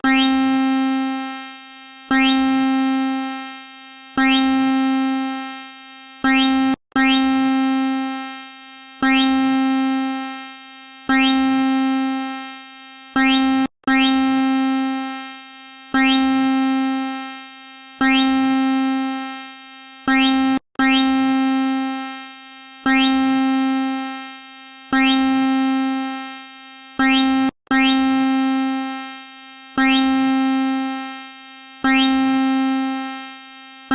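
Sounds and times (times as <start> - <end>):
electronic alarm tone: 0.0 - 1.4, 2.1 - 3.4, 4.2 - 5.5, 6.2 - 8.2, 9.0 - 10.2, 11.1 - 12.4, 13.2 - 15.0, 15.9 - 17.2, 18.0 - 19.3, 20.1 - 22.0, 22.8 - 24.0, 24.9 - 26.2, 27.0 - 29.0, 29.8 - 31.0, 31.8 - 33.2.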